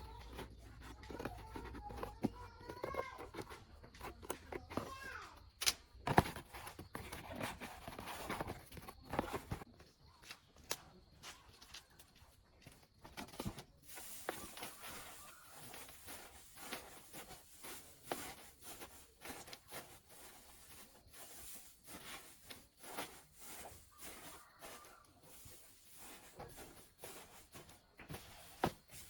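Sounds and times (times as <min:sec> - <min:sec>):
faint rustling and rubbing: 0:00.0 - 0:10.2, 0:11.2 - 0:29.0
small irregular clicks and scrapes: 0:00.0 - 0:29.0.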